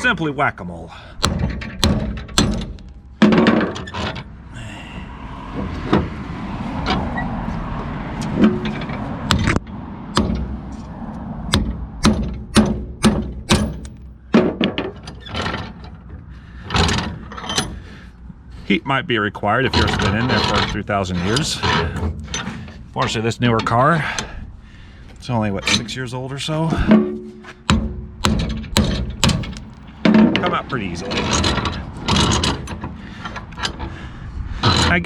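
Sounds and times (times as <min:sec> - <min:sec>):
hammer striking steel studs: 0:01.2 - 0:04.1, 0:08.2 - 0:10.6, 0:11.5 - 0:15.5, 0:26.7 - 0:30.6.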